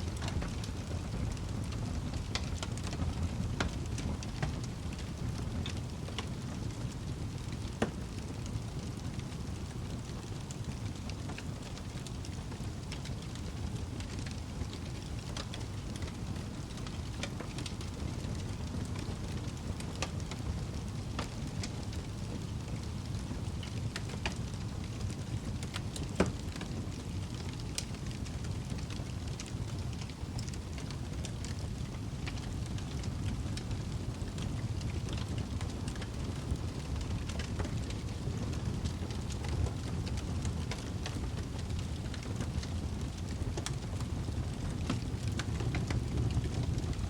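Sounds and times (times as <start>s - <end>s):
low rumble of flames: 0.0s - 47.0s
wood fire pops and snaps: 0.1s - 47.0s.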